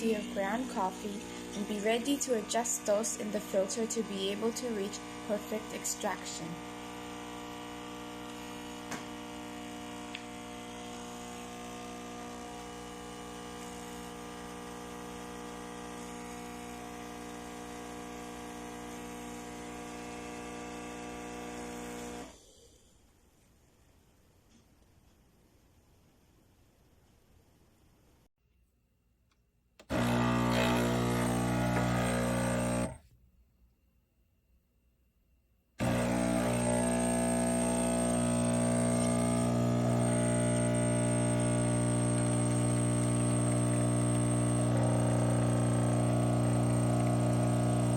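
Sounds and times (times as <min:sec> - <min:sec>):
espresso machine pump buzzing: 0:00.0 - 0:22.5, 0:29.8 - 0:33.0, 0:35.8 - 0:47.9.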